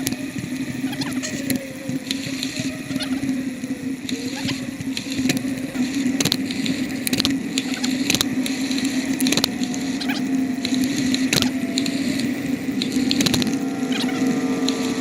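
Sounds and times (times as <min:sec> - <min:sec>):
bicycle humming: 0:00.0 - 0:15.0
faint wavering whine: 0:00.0 - 0:15.0
bicycle clicks and rattles: 0:04.0 - 0:15.0.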